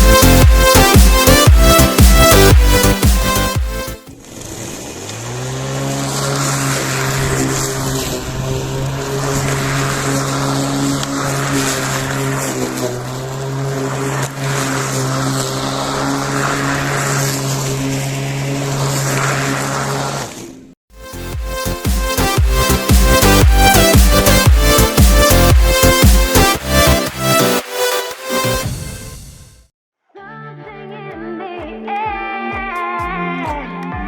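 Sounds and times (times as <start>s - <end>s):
lawn mower motor whining: 0.0s - 28.6s.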